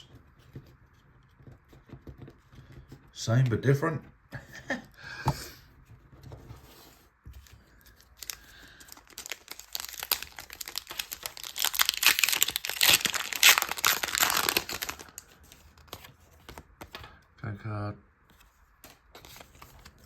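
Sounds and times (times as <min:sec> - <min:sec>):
foil wrapper tearing and crinkling: 0:07.9 - 0:16.0.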